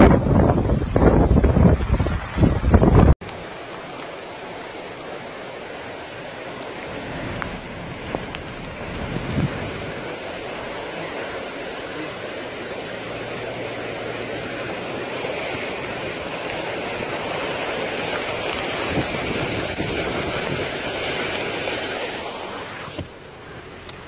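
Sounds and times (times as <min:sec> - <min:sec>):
floodwater rushing: 0:00.1 - 0:24.0.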